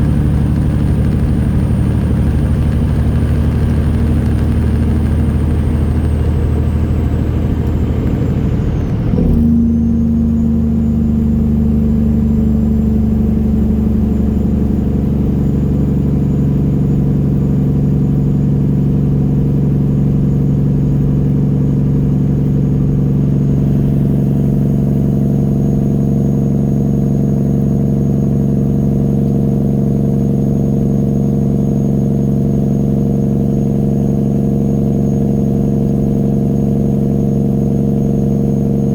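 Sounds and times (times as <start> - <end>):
diesel truck engine running: 0.0 - 38.9.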